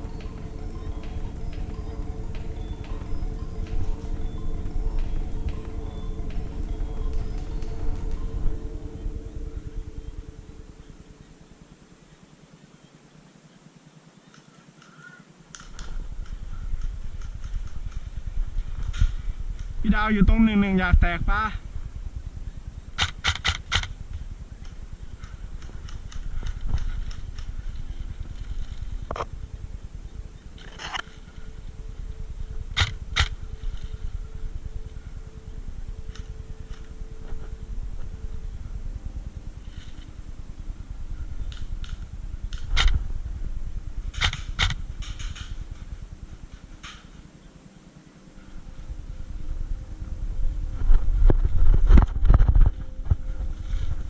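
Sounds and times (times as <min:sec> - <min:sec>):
wind rumble on microphone: 0:48.6 - 0:54.0.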